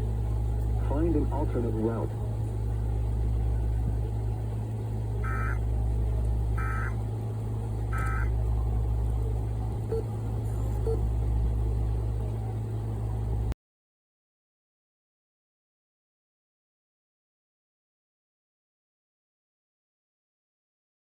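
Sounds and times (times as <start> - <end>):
low rumble: 0.0 - 13.6
data tone bursts: 5.2 - 5.6, 6.6 - 7.0, 7.9 - 8.3, 9.9 - 11.0.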